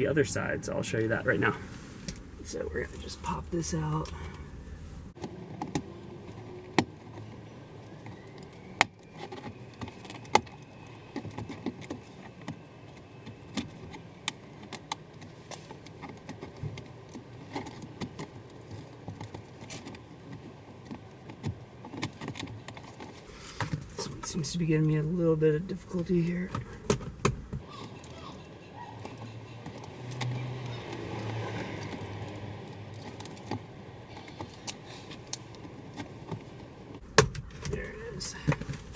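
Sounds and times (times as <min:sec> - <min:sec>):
plastic panel clicking and rattling: 0:05.2 - 0:23.3, 0:27.6 - 0:37.0.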